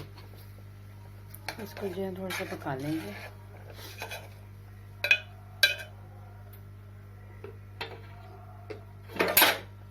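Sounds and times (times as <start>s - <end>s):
steady low hum: 0.0s - 9.9s
metal spoon clinking on pot: 5.0s - 6.0s.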